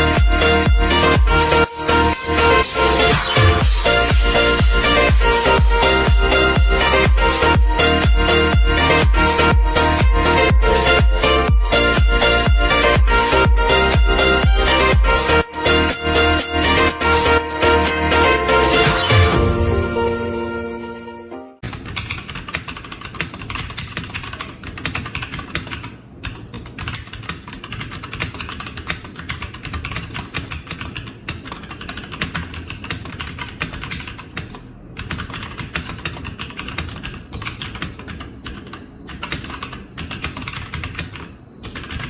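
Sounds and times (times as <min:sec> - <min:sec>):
mechanical keyboard typing: 0:21.6 - 0:42.0.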